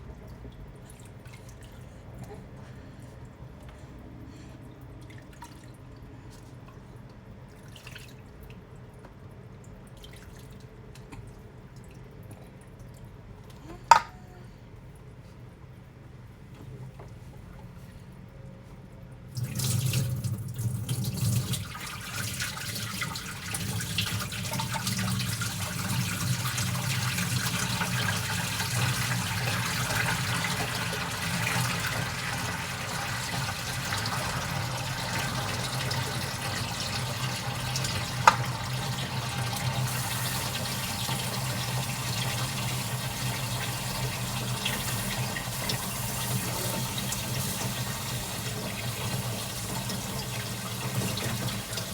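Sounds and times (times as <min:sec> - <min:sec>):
water running from a tap: 0:19.4 - 0:51.9.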